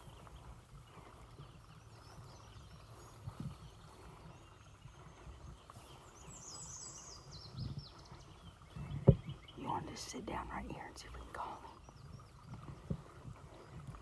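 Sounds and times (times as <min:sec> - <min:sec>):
songbirds singing: 0:00.0 - 0:14.0
soft footstep thumps: 0:08.9 - 0:09.4.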